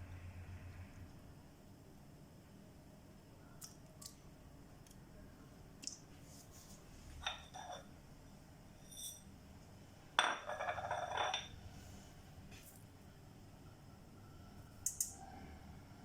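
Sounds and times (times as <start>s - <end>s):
glassware clinking: 7.2s - 7.9s, 8.8s - 9.3s, 10.2s - 11.6s.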